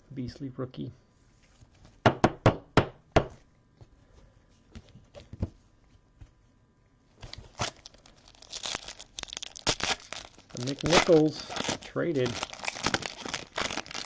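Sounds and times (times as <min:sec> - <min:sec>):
plastic crinkling: 0:07.2 - 0:14.0.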